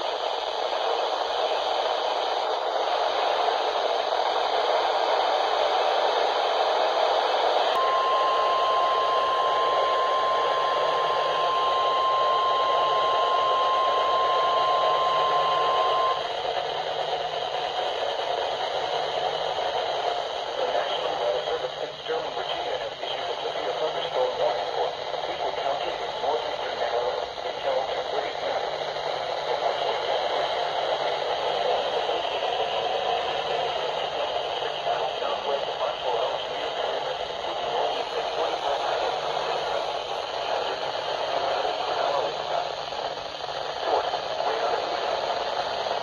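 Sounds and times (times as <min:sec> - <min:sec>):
radio receiver hiss: 0:00.0 - 0:46.0
steady warning alarm tone: 0:07.7 - 0:16.3.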